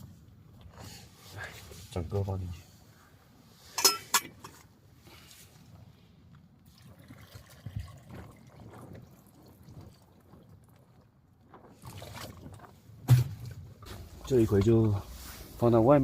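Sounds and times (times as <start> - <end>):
water sloshing in a pot: 6.6 - 15.4.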